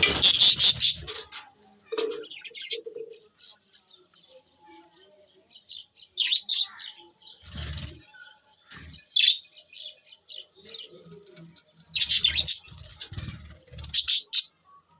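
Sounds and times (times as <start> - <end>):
budgerigars chirping: 0.0 - 2.9, 11.9 - 14.5.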